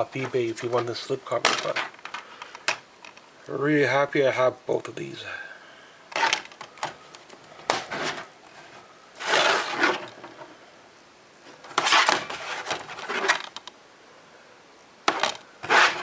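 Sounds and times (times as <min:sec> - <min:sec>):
plastic cases clacking and rustling: 0:00.0 - 0:03.2, 0:06.1 - 0:08.3, 0:09.2 - 0:10.4, 0:11.6 - 0:13.7, 0:15.1 - 0:16.0.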